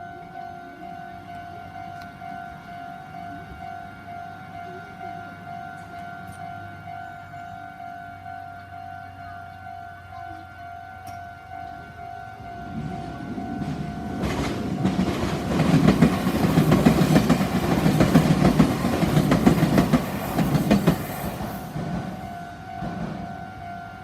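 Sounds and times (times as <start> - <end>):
level-crossing warning bell: 0.0 - 24.0
train wheels clattering: 12.6 - 23.2.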